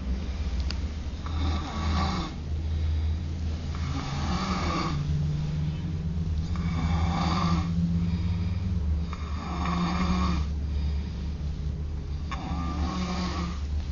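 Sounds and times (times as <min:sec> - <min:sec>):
steady low hum: 0:00.0 - 0:13.9
pet snoring: 0:01.2 - 0:02.4, 0:03.7 - 0:05.6, 0:06.4 - 0:08.3, 0:09.0 - 0:10.9, 0:12.2 - 0:13.8.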